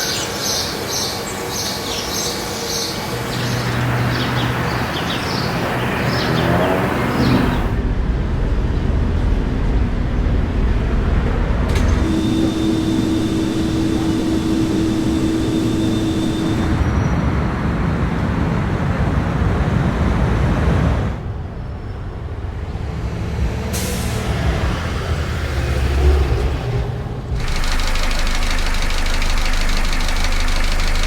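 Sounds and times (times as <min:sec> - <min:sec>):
vehicle engine rumble: 0:06.5 - 0:24.8.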